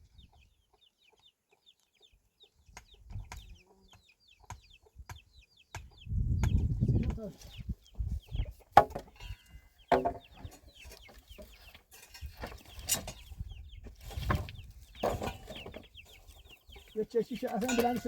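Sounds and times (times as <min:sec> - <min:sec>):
chickens clucking: 0:00.0 - 0:18.0
sharp knocks: 0:08.8 - 0:09.2, 0:09.9 - 0:10.5.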